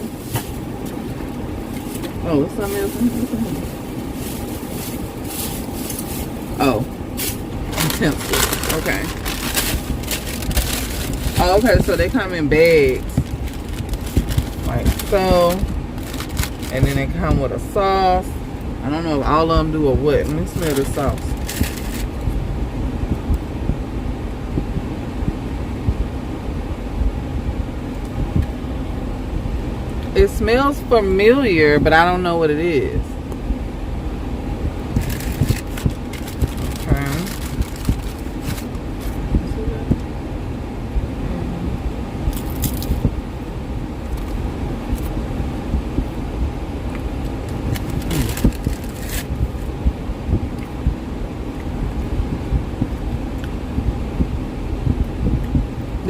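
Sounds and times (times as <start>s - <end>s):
car engine idling: 0.0s - 56.0s
handling clicks and rustles: 7.1s - 17.4s, 20.1s - 22.4s, 34.9s - 39.3s, 46.9s - 49.4s.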